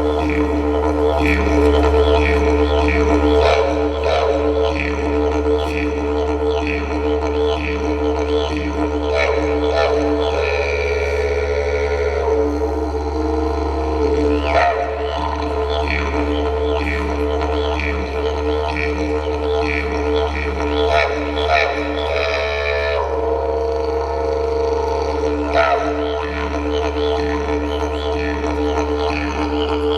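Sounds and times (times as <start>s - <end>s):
didgeridoo drone: 0.0s - 29.9s.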